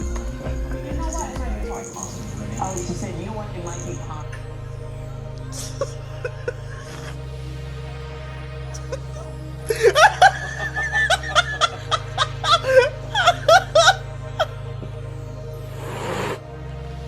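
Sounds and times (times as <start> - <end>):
background music with bass line: 0.0 - 17.0
laugh-like bursts bending in pitch: 5.4 - 7.3, 8.7 - 14.6.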